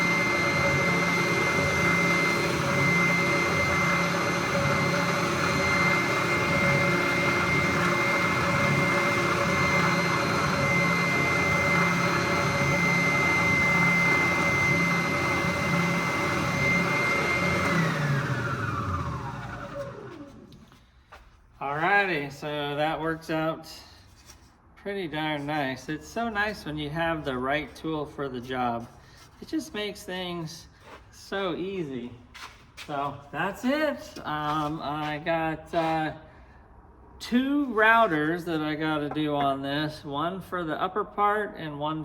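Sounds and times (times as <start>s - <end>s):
electric sander whining: 0.0s - 20.8s.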